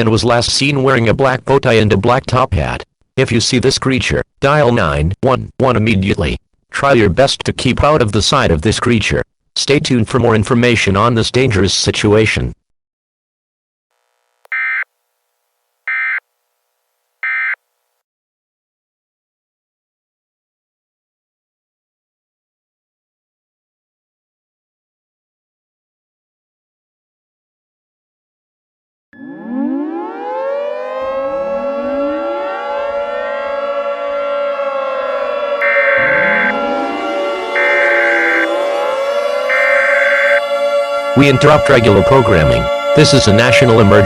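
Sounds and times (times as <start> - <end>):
siren winding up into a wail: 29.2 - 44.0
digital data tone bursts: 35.6 - 36.8, 39.5 - 40.4.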